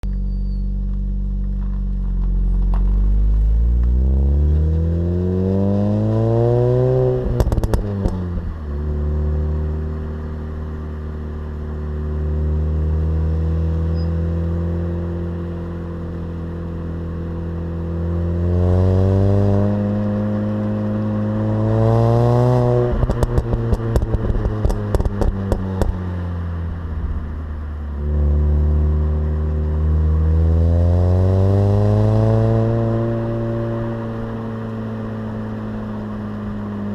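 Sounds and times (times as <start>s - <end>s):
car engine accelerating: 0.0s - 36.9s
exhaust crackles: 22.6s - 31.0s.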